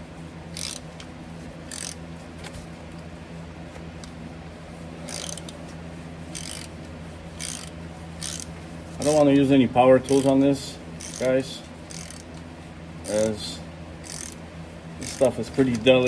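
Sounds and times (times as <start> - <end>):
steady low hum: 0.0 - 16.0
ratchet wrench clicking: 0.6 - 0.8, 1.7 - 2.0, 5.1 - 5.6, 6.3 - 6.7, 7.4 - 8.5, 11.0 - 11.3, 11.9 - 12.4, 14.0 - 14.4, 15.0 - 15.3.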